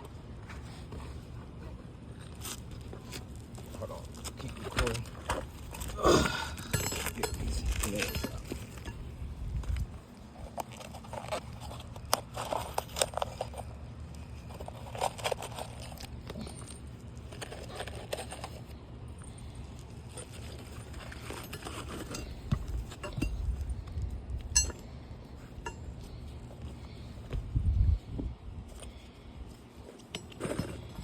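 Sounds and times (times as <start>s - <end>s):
steady low hum: 0.0s - 31.0s
nails clinking and rattling: 6.5s - 9.1s.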